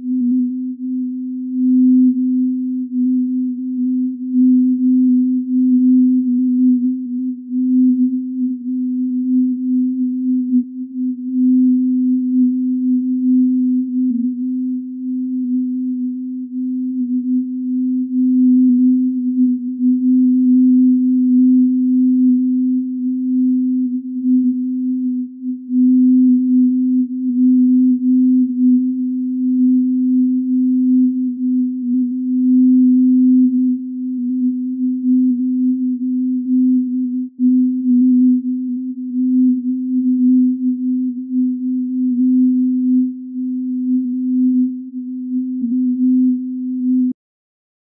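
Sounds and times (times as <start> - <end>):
low electronic sine tone: 0.0 - 47.2.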